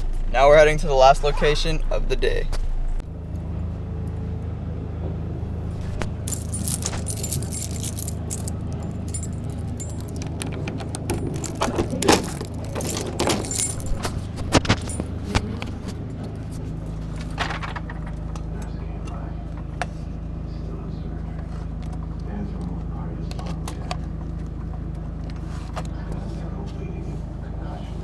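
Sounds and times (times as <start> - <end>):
car engine hum from cabin: 0.0 - 28.0
metallic jingling and clinking: 5.8 - 15.2.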